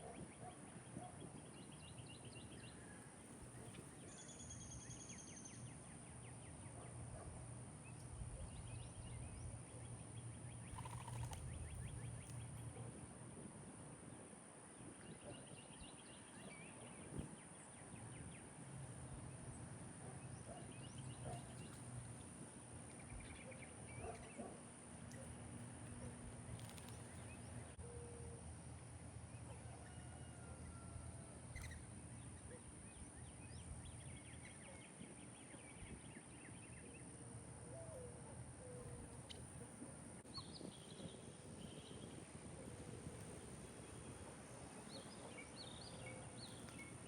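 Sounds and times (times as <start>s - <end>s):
small birds chirping: 0.0s - 12.8s, 20.0s - 27.8s, 38.8s - 47.0s.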